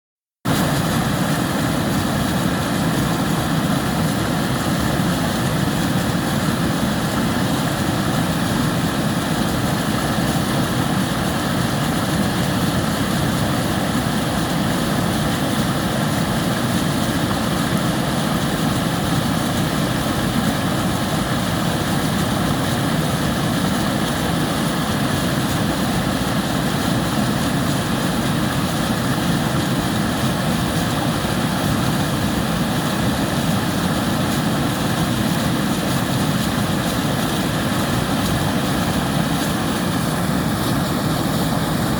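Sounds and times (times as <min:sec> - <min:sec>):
river water rushing: 0:00.5 - 0:41.9.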